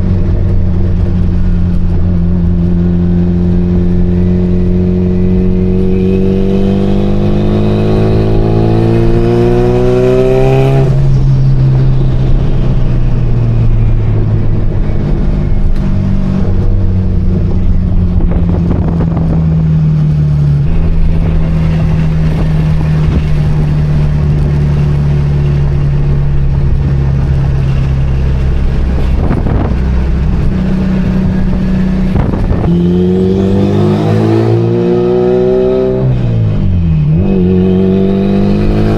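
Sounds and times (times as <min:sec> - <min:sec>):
car engine revving: 0:00.0 - 0:38.9.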